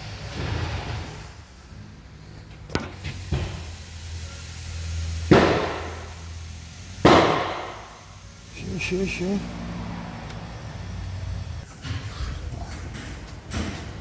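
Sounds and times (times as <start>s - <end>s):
loud bang: 0.1s - 2.0s, 5.3s - 6.3s, 7.0s - 8.2s.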